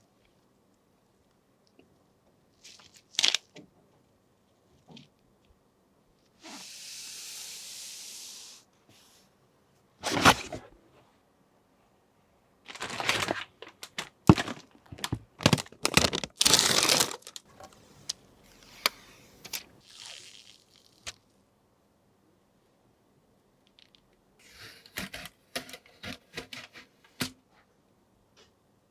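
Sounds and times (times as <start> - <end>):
plastic packaging crinkling: 2.6 - 3.5, 12.7 - 17.5, 19.8 - 21.2
soft hiss: 4.1 - 9.9, 17.5 - 24.4.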